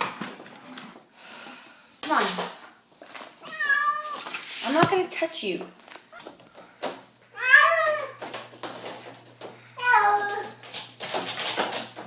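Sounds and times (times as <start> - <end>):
cat meowing: 3.4 - 4.2, 7.4 - 8.2
knocks and scuffles: 4.3 - 5.1.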